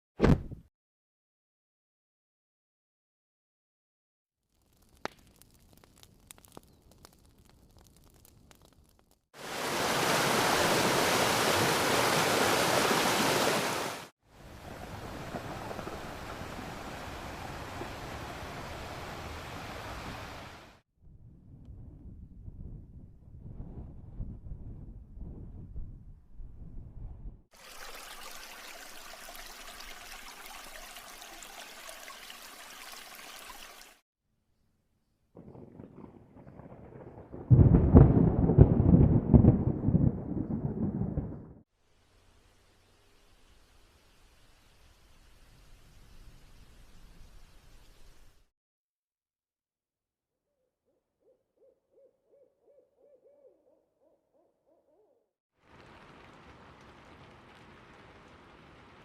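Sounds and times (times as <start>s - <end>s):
running water: 9.4s - 14.1s, 27.6s - 34.0s.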